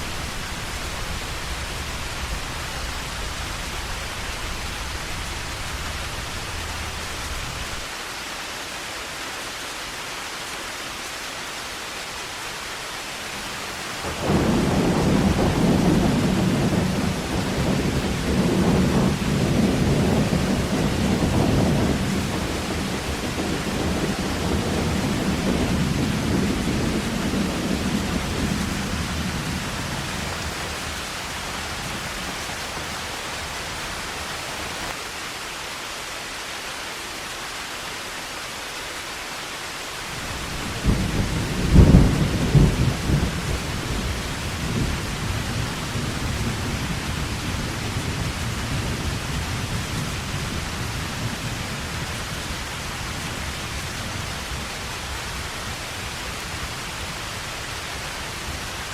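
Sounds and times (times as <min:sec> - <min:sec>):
heavy rain falling: 0:00.0 - 0:58.9
sharp thunderclap: 0:14.0 - 0:32.8, 0:40.2 - 0:52.0
thunder rumbling: 0:14.0 - 0:34.9, 0:40.2 - 0:57.0.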